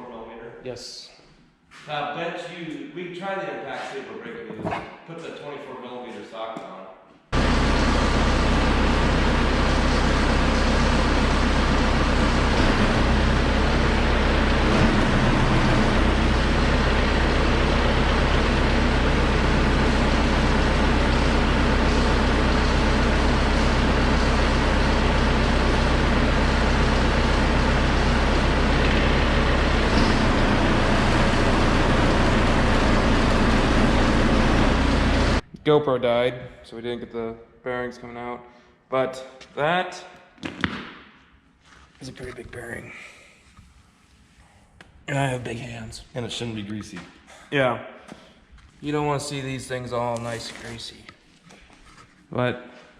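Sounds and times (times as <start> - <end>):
large engine humming: 7.4 - 35.4
loud mechanical noise: 7.4 - 35.4.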